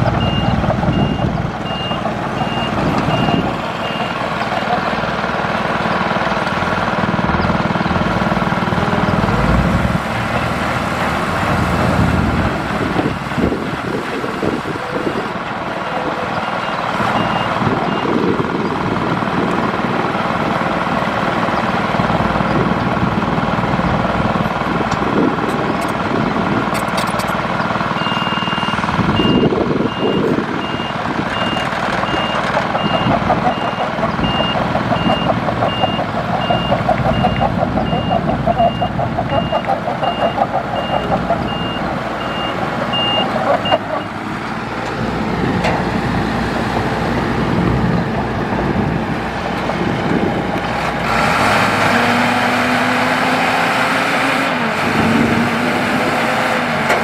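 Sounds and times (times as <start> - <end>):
heavy machinery engine rumbling: 0.0 - 57.0
reversing alarm beeping: 0.2 - 4.2, 15.8 - 18.2, 28.0 - 44.1.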